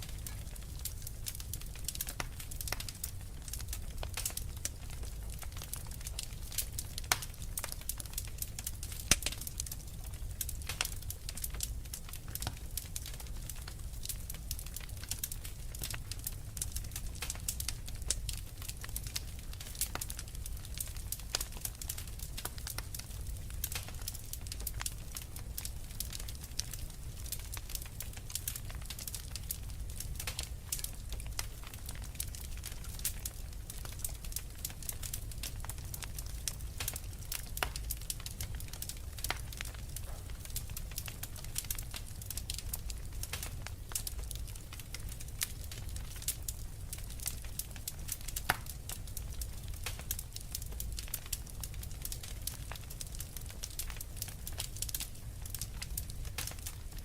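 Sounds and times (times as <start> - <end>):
low rumble of flames: 0.0 - 57.0
wood fire crackling and popping: 0.0 - 57.0.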